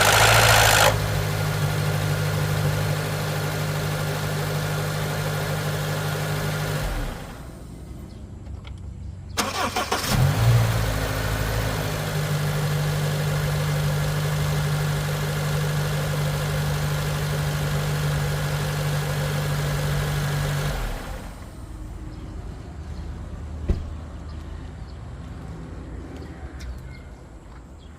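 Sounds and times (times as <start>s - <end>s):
engine starting and idling: 0.0s - 8.0s, 9.3s - 21.7s.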